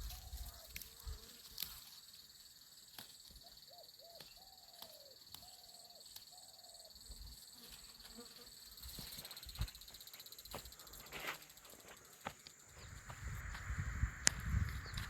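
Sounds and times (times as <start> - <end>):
insect chorus buzzing: 0.0 - 15.0
bird calls: 3.3 - 7.1, 12.4 - 15.0.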